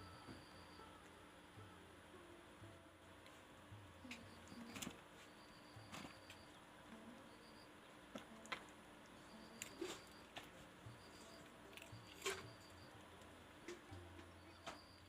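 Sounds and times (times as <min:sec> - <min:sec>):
cat chewing food crunching: 0:09.5 - 0:14.5.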